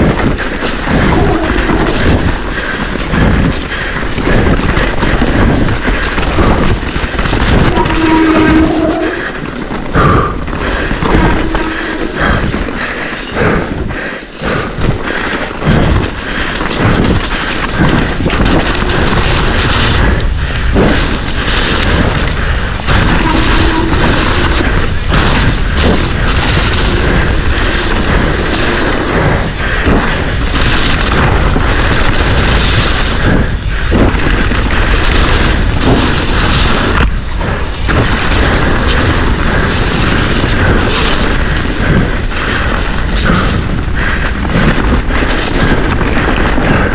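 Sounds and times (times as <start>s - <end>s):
wind and tyre noise: 0.0s - 46.9s
bike knocks and rattles: 14.6s - 46.9s.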